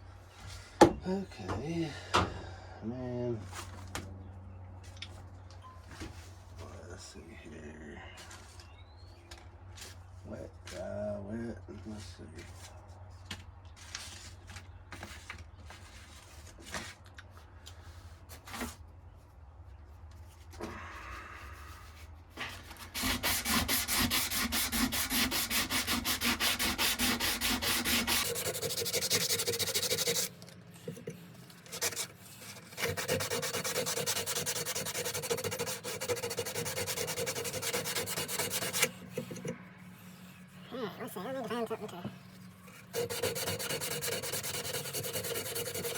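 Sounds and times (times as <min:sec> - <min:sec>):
sandpaper on knife blade: 0:22.5 - 0:30.3, 0:31.6 - 0:40.4, 0:42.7 - 0:45.9
handling noises: 0:29.4 - 0:32.9.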